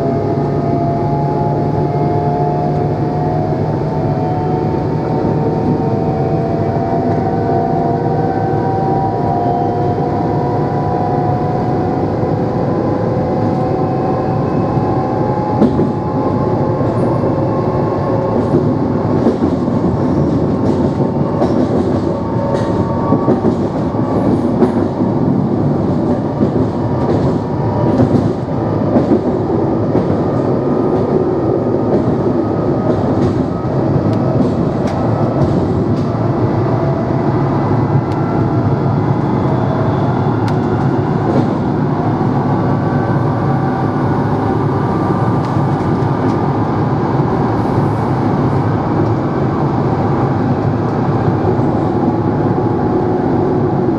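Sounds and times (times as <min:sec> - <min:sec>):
train running rumble: 0:00.0 - 0:53.9.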